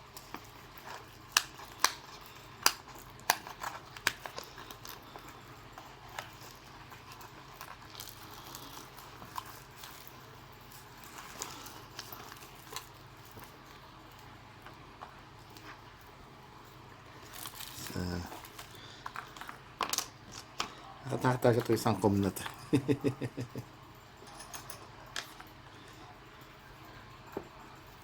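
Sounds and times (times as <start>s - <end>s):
packaging rustling: 0.1s - 13.9s, 17.1s - 22.6s.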